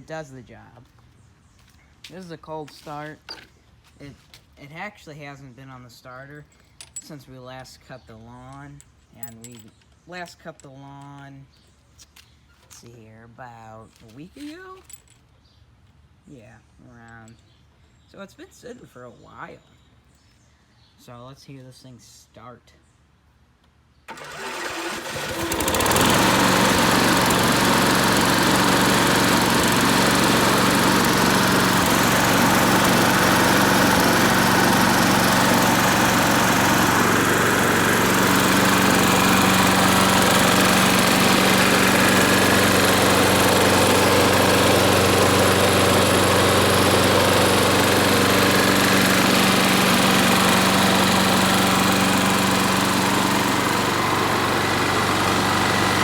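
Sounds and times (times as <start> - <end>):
lawn mower engine starting and running: 24.1 - 56.0.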